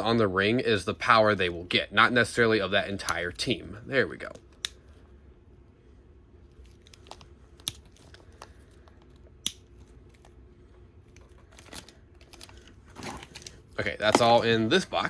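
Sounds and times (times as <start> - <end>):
faint low hum: 0.0 - 15.0
plastic toys and packaging clicking: 11.1 - 14.4.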